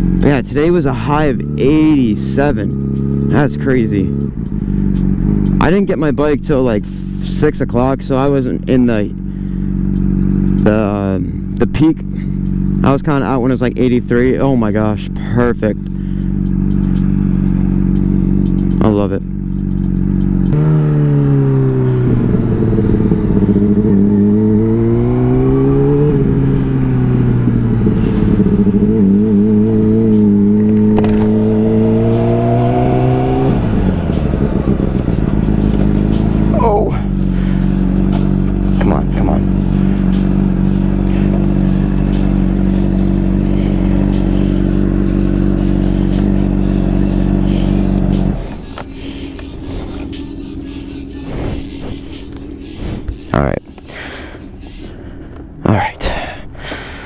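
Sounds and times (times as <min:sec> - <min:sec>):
motorcycle engine revving: 0:00.0 - 0:57.0.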